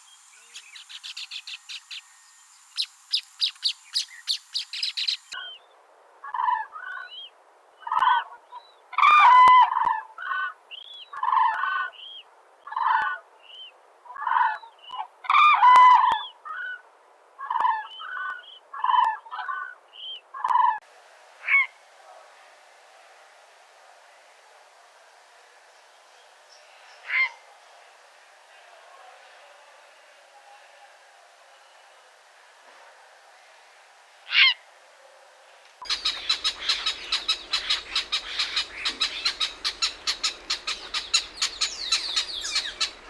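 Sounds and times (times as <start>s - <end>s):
high bird chirps: 0.0s - 5.4s, 35.8s - 43.0s
bird calling in low notes: 35.8s - 43.0s.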